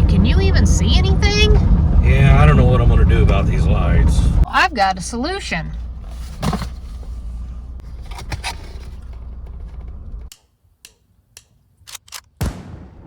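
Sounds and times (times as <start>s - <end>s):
low rumble inside vehicle cabin: 0.0s - 10.3s
rustles and knocks: 5.8s - 10.4s.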